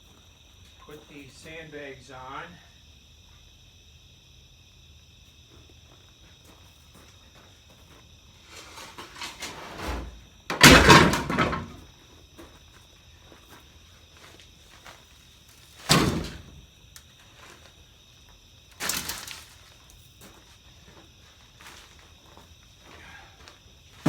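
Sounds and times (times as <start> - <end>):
crickets buzzing: 0.0 - 24.0
scraping and rustling: 8.4 - 11.8
loud heavy thump: 8.8 - 11.8, 15.9 - 16.6.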